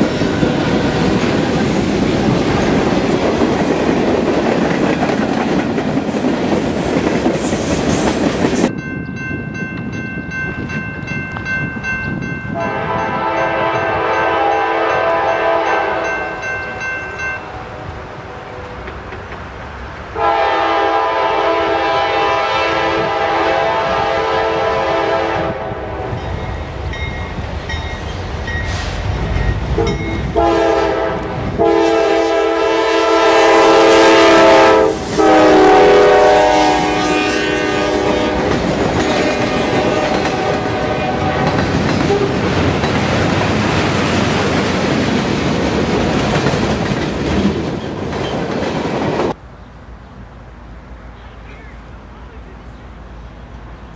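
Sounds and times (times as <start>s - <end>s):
train wheels on rails: 0.0s - 49.5s
locomotive air horn blasts: 12.6s - 16.8s, 20.2s - 26.4s, 29.8s - 42.3s.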